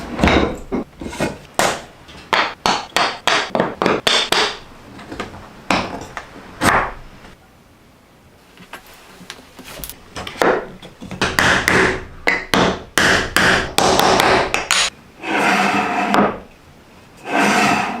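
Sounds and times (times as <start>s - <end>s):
rasping strokes: 15.2s - 16.2s, 17.2s - 18.0s
hand tool scraping wood: 15.2s - 16.4s, 17.2s - 18.0s.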